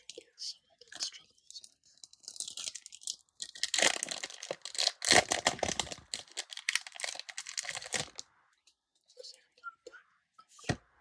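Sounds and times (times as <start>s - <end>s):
foil wrapper crinkling and tearing: 1.9s - 8.2s.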